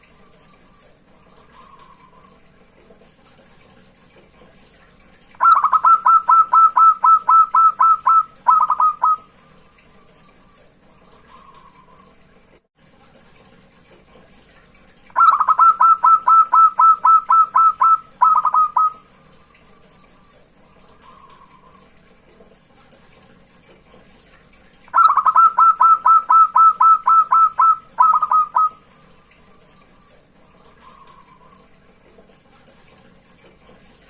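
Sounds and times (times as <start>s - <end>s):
dove cooing song: 5.4s - 9.4s, 15.2s - 19.1s, 24.9s - 29.1s.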